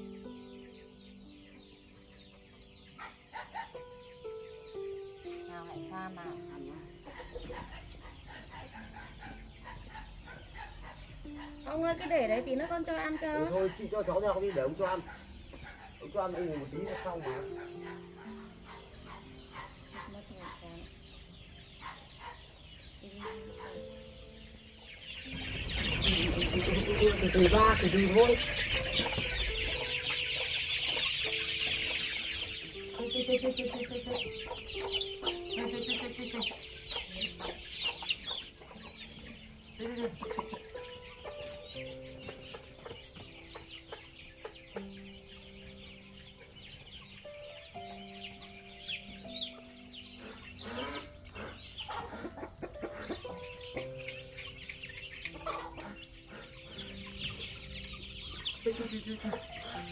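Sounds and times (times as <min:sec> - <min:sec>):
chickens clucking and cheeping: 0:00.0 - 0:59.9
soft background music: 0:00.0 - 0:59.9.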